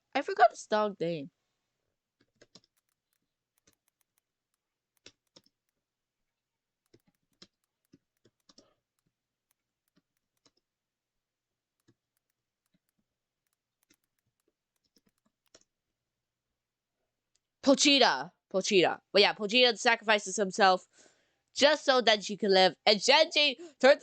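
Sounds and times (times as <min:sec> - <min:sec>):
faint irregular clicks: 0:02.2 - 0:10.8, 0:11.6 - 0:15.9.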